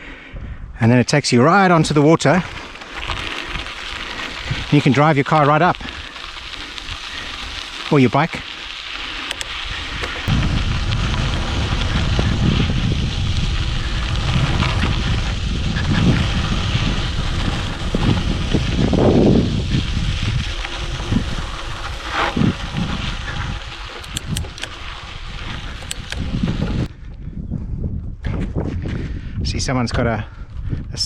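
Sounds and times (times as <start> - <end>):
wind buffeting microphone: 0.3 - 0.9, 2.2 - 8.5, 9.3 - 31.0
faint clicks: 23.9 - 24.9, 25.8 - 26.3.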